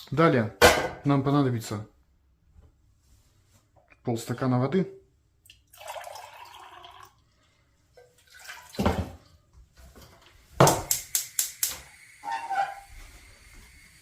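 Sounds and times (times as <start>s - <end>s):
water pouring into saucepan: 5.5s - 9.4s.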